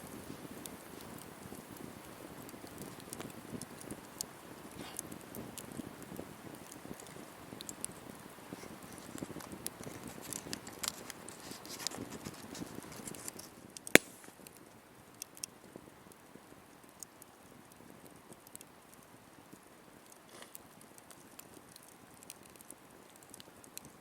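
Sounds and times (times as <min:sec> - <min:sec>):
wood fire crackling: 0:00.0 - 0:24.0
loud fire pop: 0:14.0 - 0:14.3.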